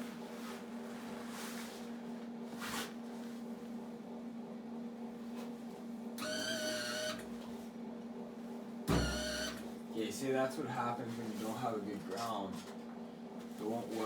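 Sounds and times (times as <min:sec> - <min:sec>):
pitched motor whine: 0:08.9 - 0:09.7.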